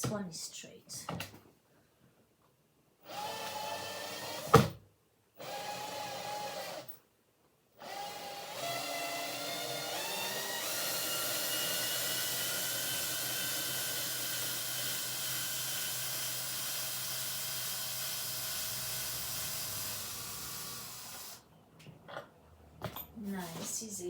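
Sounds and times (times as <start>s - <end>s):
electric drill whining: 3.0s - 4.7s, 5.4s - 6.9s, 7.8s - 21.4s.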